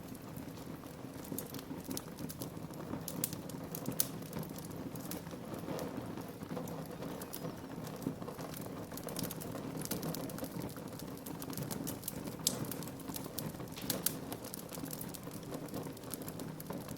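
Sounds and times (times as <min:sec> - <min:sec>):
fire crackling and popping: 0:00.0 - 0:16.9
fire flames rushing: 0:00.2 - 0:16.9.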